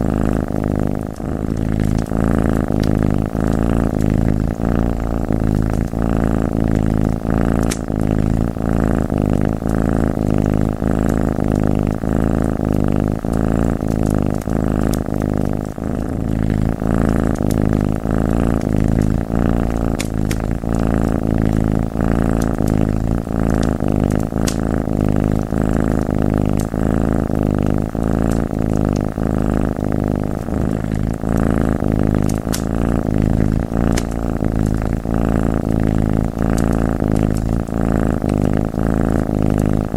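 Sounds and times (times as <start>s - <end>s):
cat purring: 0.0s - 39.9s
wood fire crackling: 17.4s - 24.7s.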